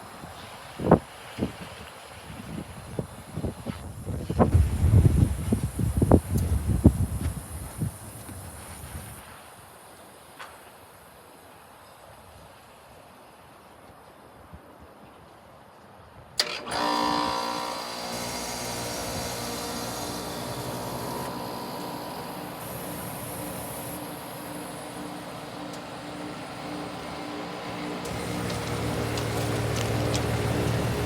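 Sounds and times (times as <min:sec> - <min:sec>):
compressor and fan hum: 0:16.4 - 0:31.0.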